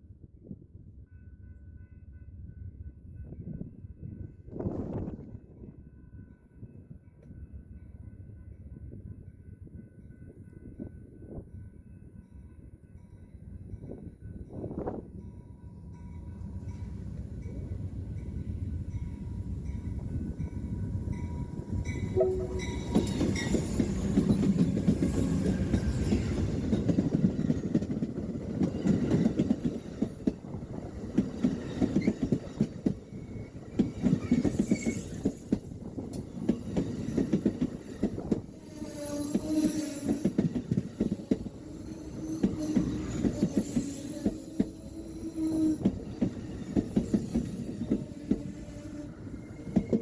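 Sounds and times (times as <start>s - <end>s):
train wheels rumbling on rail: 13.5s - 50.0s.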